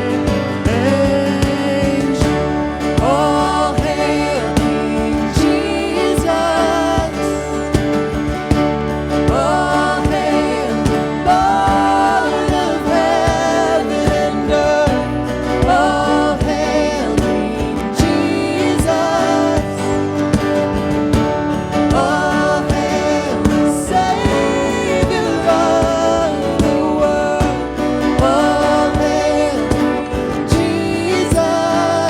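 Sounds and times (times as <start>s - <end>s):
instrumental backing: 0.0s - 32.0s
person singing with vibrato: 0.0s - 32.0s.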